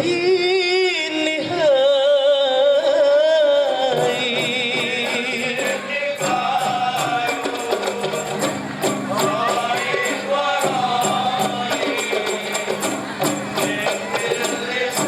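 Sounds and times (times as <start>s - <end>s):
man singing ornamented notes: 0.0s - 15.0s
hand percussion beat: 3.8s - 15.0s.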